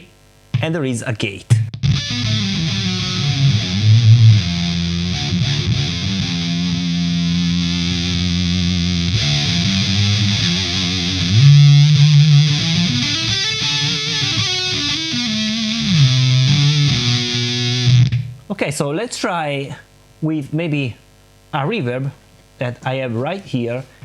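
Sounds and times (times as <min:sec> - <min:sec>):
distorted electric guitar: 0:00.0 - 0:00.8, 0:01.5 - 0:18.5.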